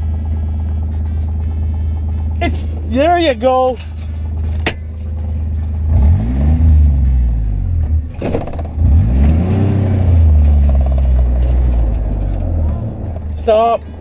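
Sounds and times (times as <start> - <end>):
vehicle engine revving: 0.0 - 14.0
sharp clunk: 3.8 - 5.2, 7.8 - 8.8.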